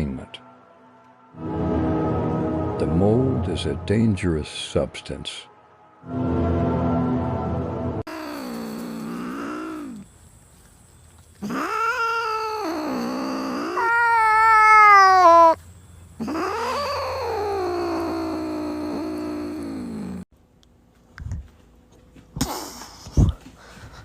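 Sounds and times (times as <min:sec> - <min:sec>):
cat yowling: 0:08.1 - 0:10.0, 0:11.4 - 0:15.6, 0:16.2 - 0:20.2.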